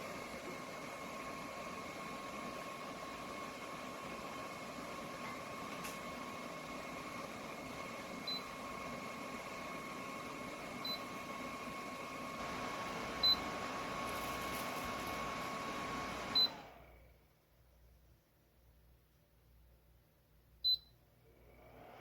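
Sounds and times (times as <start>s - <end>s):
fan blowing air with whine: 0.0s - 17.0s.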